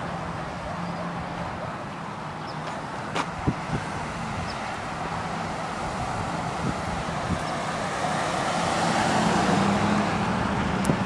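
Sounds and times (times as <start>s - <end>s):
small engine droning: 3.7s - 11.0s.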